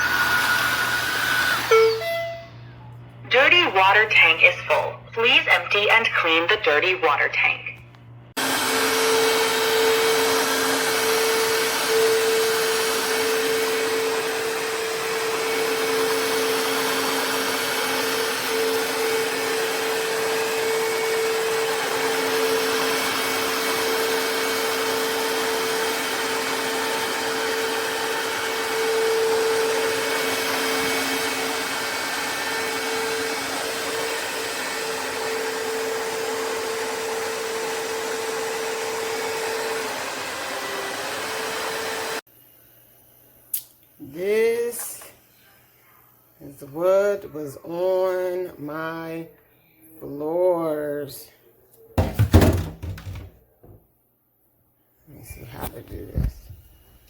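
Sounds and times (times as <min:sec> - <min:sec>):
floor vacuum running: 0:00.0 - 0:05.4, 0:08.3 - 0:42.2.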